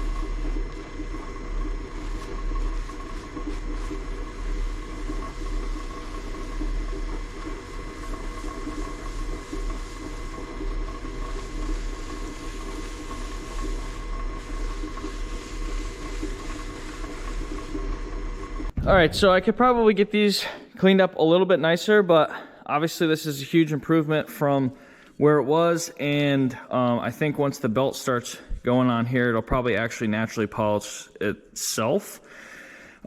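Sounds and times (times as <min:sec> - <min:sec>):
steel wool rubbing pulleys: 0:00.0 - 0:18.8
electric motor humming and whining: 0:00.0 - 0:19.9.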